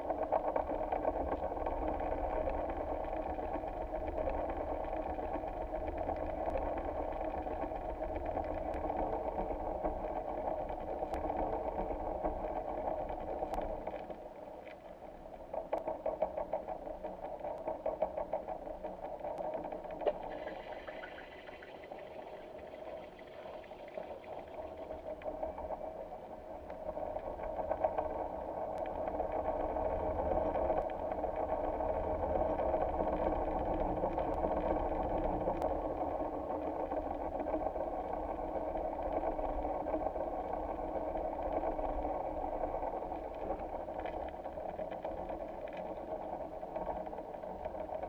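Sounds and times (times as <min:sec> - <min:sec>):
faint clicks: 0:05.3 - 0:22.0, 0:32.6 - 0:48.0.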